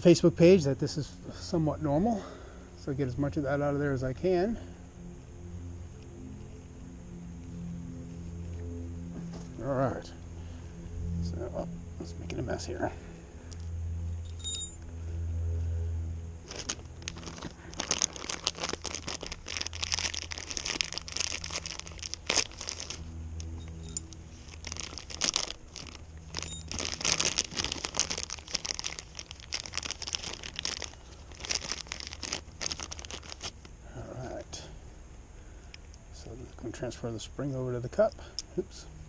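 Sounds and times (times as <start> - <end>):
crinkling and rustling wipes: 16.4 - 33.7.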